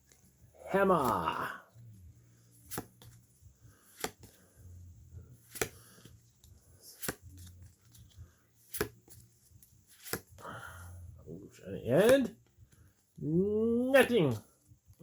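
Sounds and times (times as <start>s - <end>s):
trading cards snapping: 2.6s - 3.2s, 3.8s - 4.4s, 5.4s - 6.1s, 6.9s - 7.6s, 8.7s - 9.2s, 9.9s - 10.4s.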